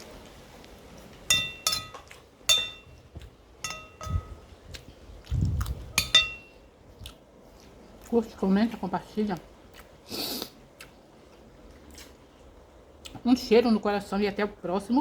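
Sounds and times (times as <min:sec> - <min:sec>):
cutlery clinking against plate: 0:01.3 - 0:03.0, 0:03.6 - 0:04.4, 0:06.0 - 0:06.5.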